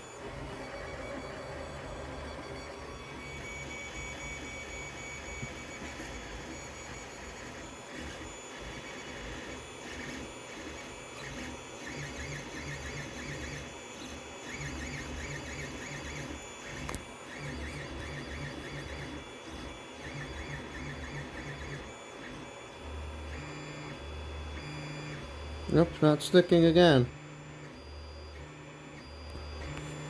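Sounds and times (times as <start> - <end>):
stepper motors whining: 0.0 - 30.0.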